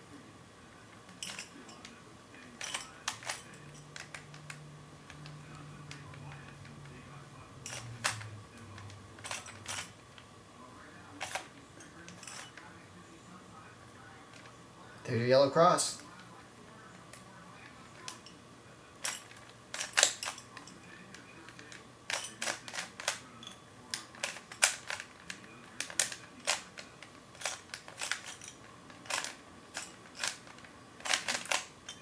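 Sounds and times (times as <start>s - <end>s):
puzzle cube plastic clicks: 21.5s - 23.2s, 23.9s - 31.7s.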